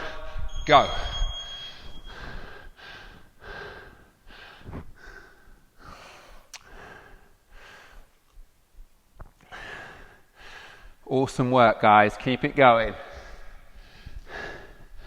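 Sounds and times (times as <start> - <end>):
man breathing hard: 1.7 - 8.2, 9.4 - 11.0, 13.0 - 15.0.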